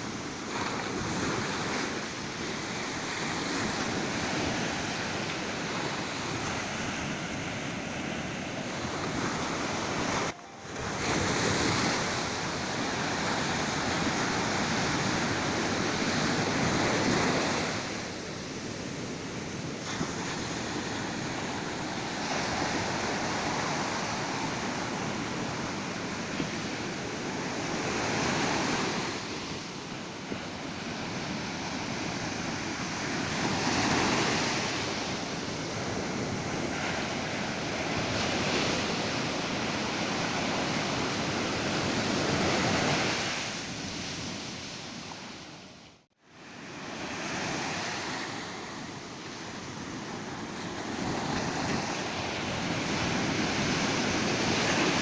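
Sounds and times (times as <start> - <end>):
waves breaking on beach: 0.0 - 55.0.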